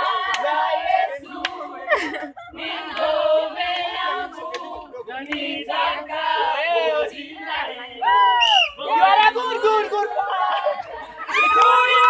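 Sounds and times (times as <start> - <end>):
group singing or chanting: 0.0 - 12.0
sharp claps: 1.4 - 1.6.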